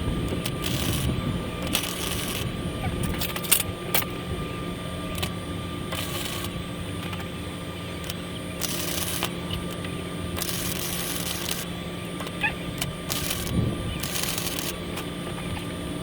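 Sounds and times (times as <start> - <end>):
steady mechanical hum: 0.0 - 16.0.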